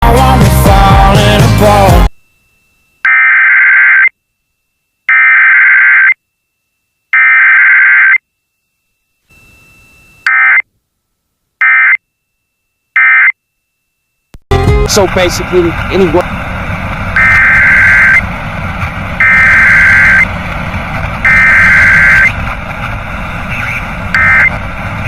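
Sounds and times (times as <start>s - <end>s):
screeching data tone bursts: 2.1s - 6.3s, 7.0s - 10.7s, 11.6s - 14.3s, 17.1s - 18.3s, 19.2s - 20.3s, 21.2s - 22.4s, 23.3s - 24.6s
short data tone bursts: 2.1s - 10.7s, 11.6s - 15.0s.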